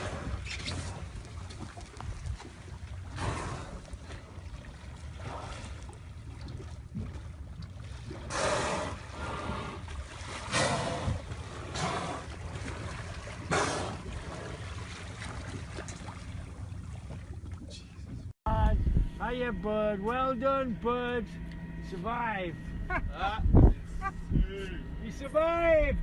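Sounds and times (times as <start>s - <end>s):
water sloshing: 0.0s - 18.3s
water splashes: 0.0s - 18.3s
boat engine rumble: 0.0s - 26.0s.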